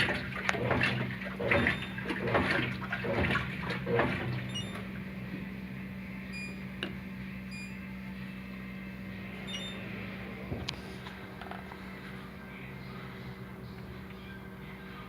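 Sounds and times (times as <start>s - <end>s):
washing machine water sloshing: 0.0s - 5.6s
low machine hum: 0.0s - 15.0s
short electronic beeps: 4.5s - 4.8s, 6.3s - 6.6s, 7.5s - 7.8s, 9.4s - 9.8s.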